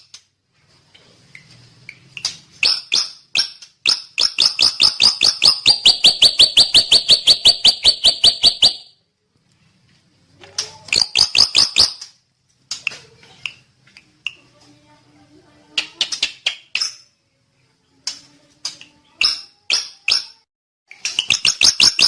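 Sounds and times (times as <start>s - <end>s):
bird chirping rapidly: 2.6s - 8.9s, 10.9s - 12.0s, 21.2s - 22.0s.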